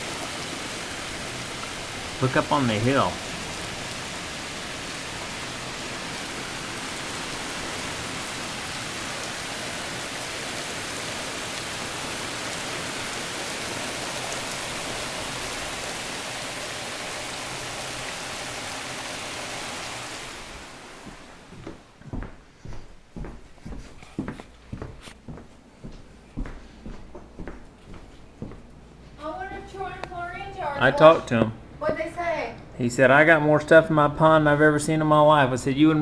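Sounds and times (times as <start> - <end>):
torrential rain pouring: 0.0 - 21.8.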